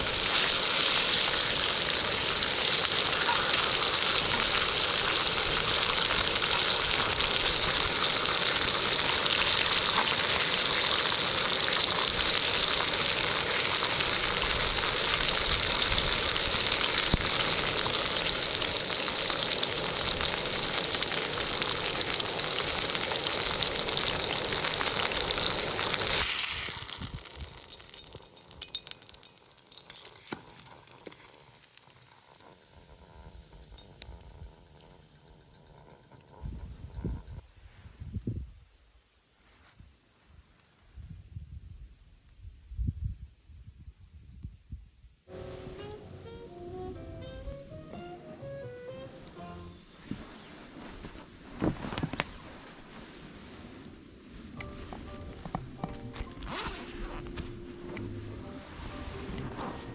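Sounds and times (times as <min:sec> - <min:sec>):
steak sizzling: 0:00.0 - 0:37.1.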